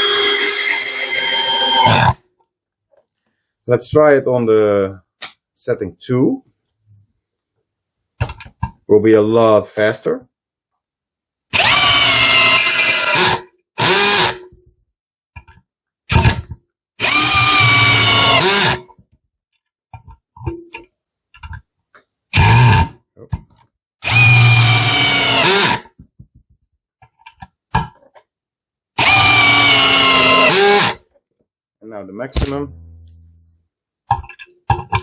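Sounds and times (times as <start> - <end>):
cordless drill driving screws into wood: 11.5 - 14.4, 16.1 - 18.9, 22.4 - 22.9, 24.0 - 26.0, 29.0 - 31.0.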